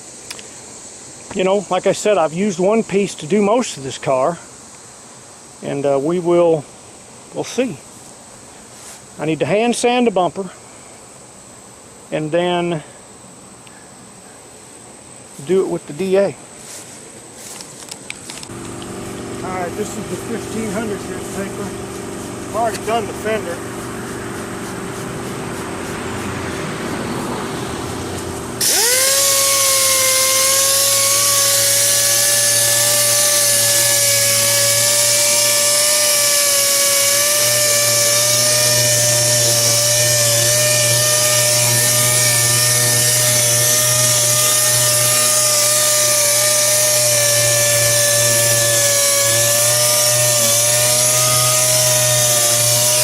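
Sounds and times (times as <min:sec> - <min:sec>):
sander whining and hissing: 0:15.3 - 0:53.0.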